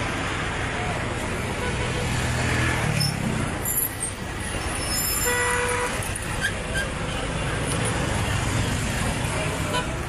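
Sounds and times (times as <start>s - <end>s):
road traffic: 0.0s - 10.0s
car horn toot: 5.2s - 6.0s.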